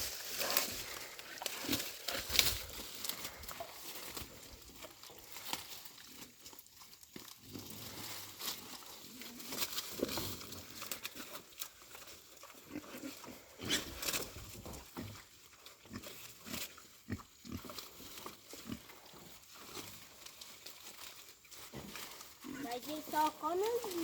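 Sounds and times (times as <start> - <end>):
pigs crunching and chewing: 0.0 - 24.0.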